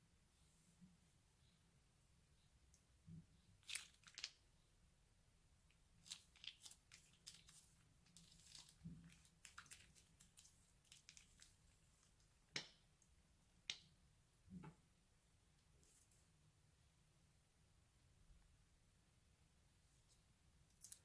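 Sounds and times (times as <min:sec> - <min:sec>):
crunchy slime crackling: 0:03.6 - 0:04.4, 0:06.0 - 0:12.2.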